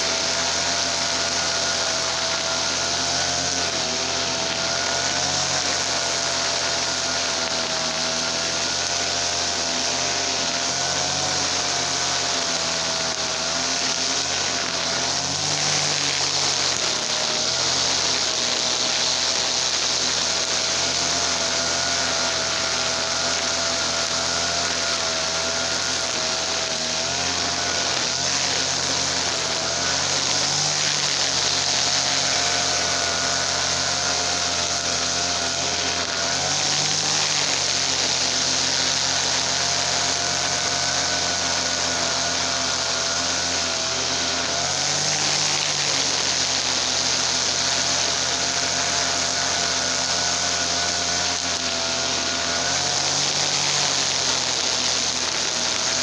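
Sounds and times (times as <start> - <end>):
brush cutter engine running: 0.0 - 56.0.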